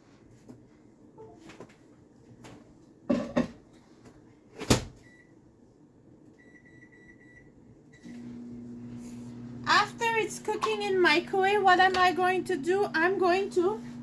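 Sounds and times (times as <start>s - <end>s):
microwave oven humming: 4.8s - 14.0s.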